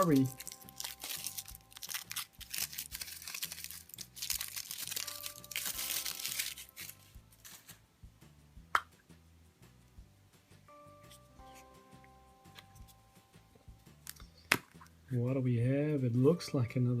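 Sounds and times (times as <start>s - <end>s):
foil wrapper crinkling and tearing: 0.0s - 7.8s.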